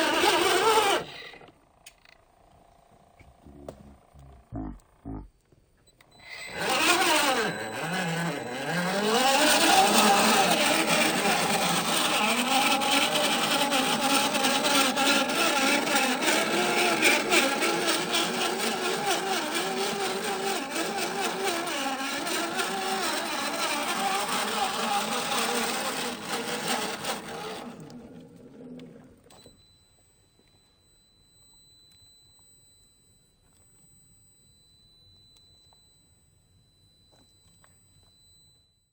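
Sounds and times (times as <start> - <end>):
electric motor and gearbox whine: 0.0 - 30.8.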